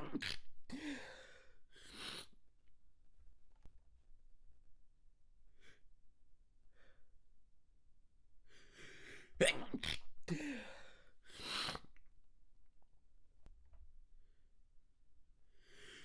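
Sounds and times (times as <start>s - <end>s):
stifled sneezes: 9.4s - 10.6s.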